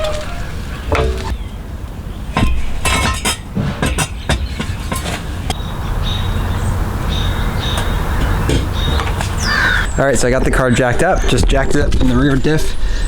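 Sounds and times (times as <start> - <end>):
floor jack metal clanks: 0.0 - 1.4, 2.3 - 5.6.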